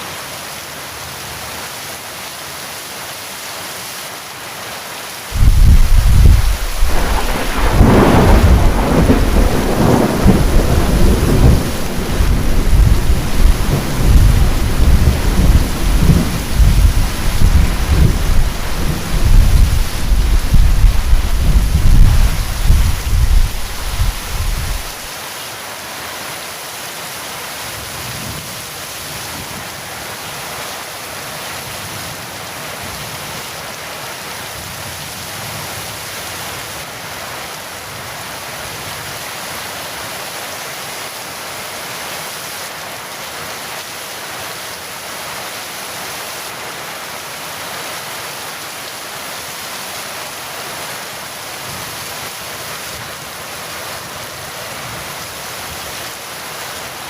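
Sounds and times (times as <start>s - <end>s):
heavy rain falling: 0.0s - 57.0s
low thunder rumble: 5.4s - 25.1s.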